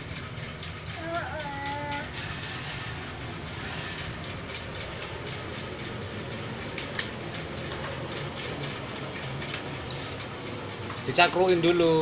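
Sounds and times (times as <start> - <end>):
toy motor and gears rattling: 0.0 - 12.0.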